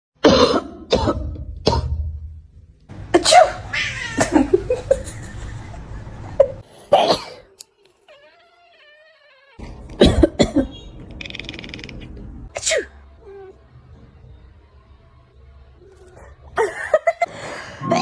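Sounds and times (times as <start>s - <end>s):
cat calling: 3.5s - 4.4s
person coughing: 6.9s - 7.5s, 10.0s - 10.8s.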